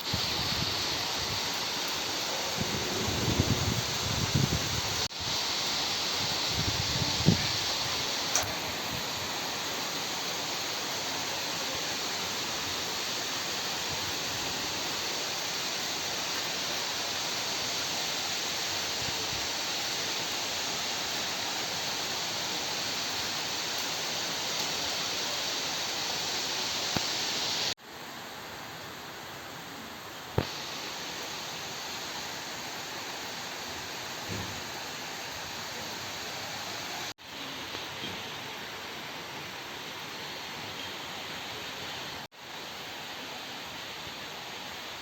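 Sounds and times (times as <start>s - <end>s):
steady rain falling: 0.0s - 45.0s.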